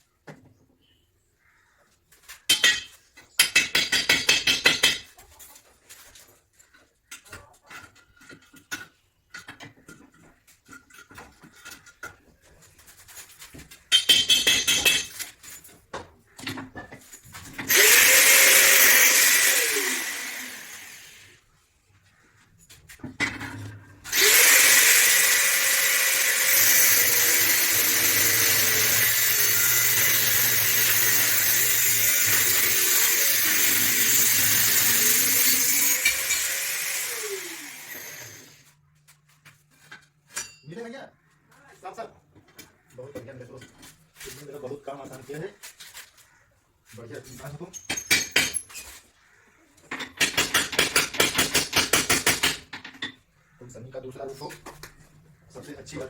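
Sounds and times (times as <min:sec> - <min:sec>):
power tool rattling: 0:17.6 - 0:21.3, 0:24.1 - 0:38.6
power tool motor spinning: 0:17.6 - 0:21.4, 0:24.1 - 0:38.6.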